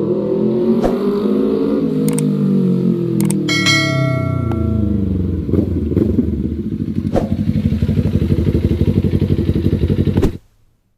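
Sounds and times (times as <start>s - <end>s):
sharp clicks: 2.1s - 2.3s, 3.2s - 3.5s
motorcycle engine idling: 3.5s - 10.2s.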